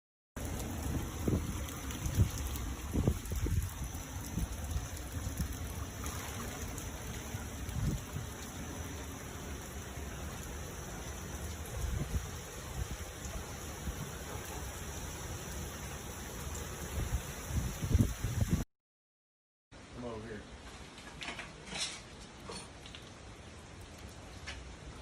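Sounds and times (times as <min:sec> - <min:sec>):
driving rain: 0:00.4 - 0:18.6, 0:19.8 - 0:25.0
hurricane wind: 0:00.4 - 0:18.6
wind buffeting microphone: 0:00.5 - 0:05.9, 0:07.5 - 0:08.4, 0:11.6 - 0:13.1, 0:16.8 - 0:18.6.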